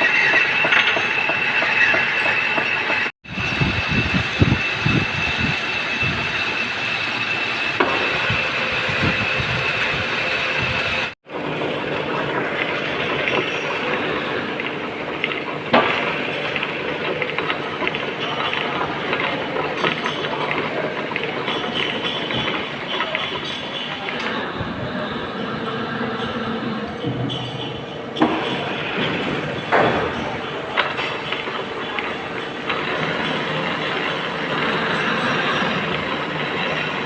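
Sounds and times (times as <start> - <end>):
high whine: 0.0 - 22.9
metal lathe running: 0.0 - 37.0.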